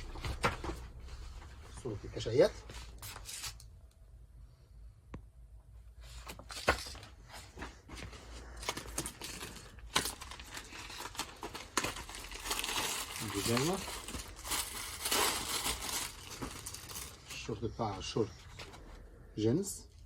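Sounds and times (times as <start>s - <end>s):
plastic packaging crinkling: 8.5s - 17.5s.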